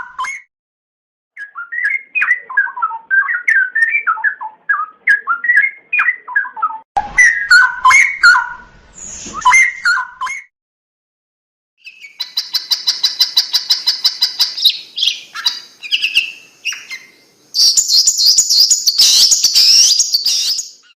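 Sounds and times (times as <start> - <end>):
songbird singing: 1.4 - 10.4, 11.8 - 20.9.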